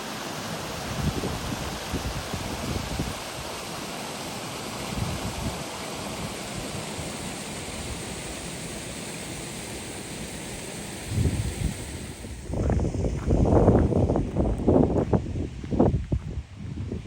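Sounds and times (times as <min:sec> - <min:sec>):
stream water rushing: 0:00.0 - 0:14.1
wind rumble on microphone: 0:00.8 - 0:03.4, 0:04.9 - 0:05.6, 0:11.0 - 0:17.0.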